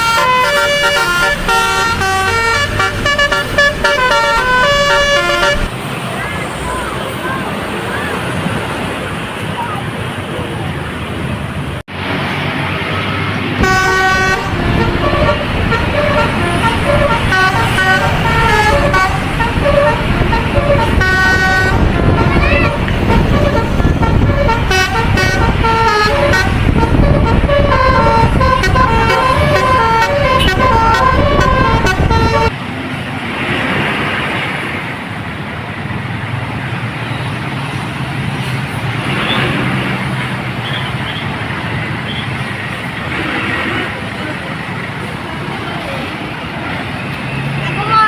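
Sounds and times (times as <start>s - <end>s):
bus multi-tone horn melody: 0.0s - 5.8s, 13.6s - 32.6s
engine and traffic noise: 0.0s - 48.0s
heavy vehicle passing: 0.0s - 48.0s.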